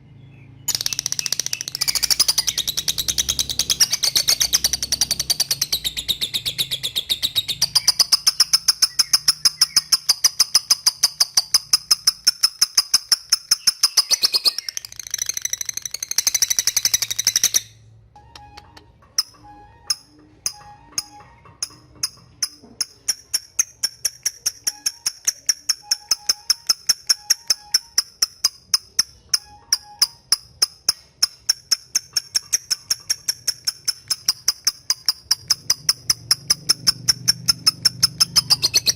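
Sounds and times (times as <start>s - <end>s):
lovebird high chirps: 0.7s - 17.8s, 19.2s - 38.9s.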